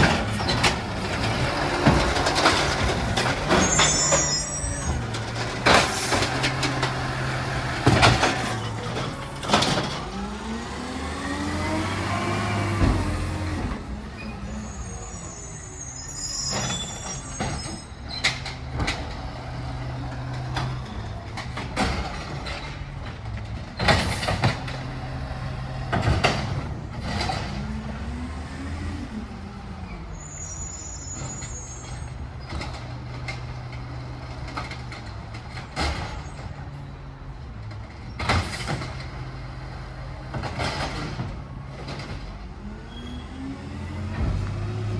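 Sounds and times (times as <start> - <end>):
bins clanking and banging: 0.0 - 10.6, 11.5 - 15.5, 16.4 - 27.8, 37.6 - 39.6, 40.2 - 42.4
diesel truck engine revving: 0.0 - 35.8, 36.5 - 44.9.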